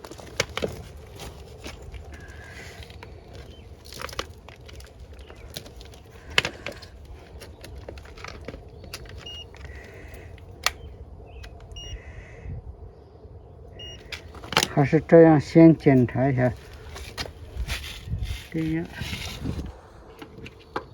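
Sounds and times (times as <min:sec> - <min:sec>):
tools clicking and clinking: 0:00.0 - 0:11.8
steady low rumble: 0:00.0 - 0:20.9.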